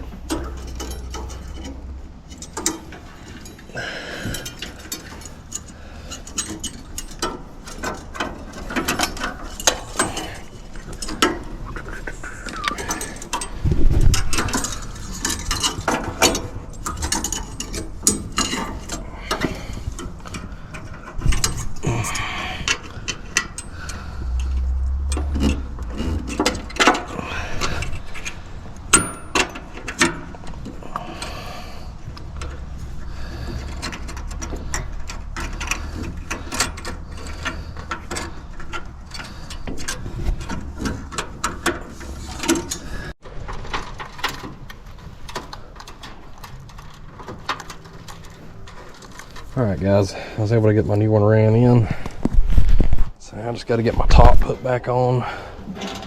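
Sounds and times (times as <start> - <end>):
tools clicking and tapping: 4.2 - 31.6, 33.4 - 42.9
low rumble: 19.0 - 29.4.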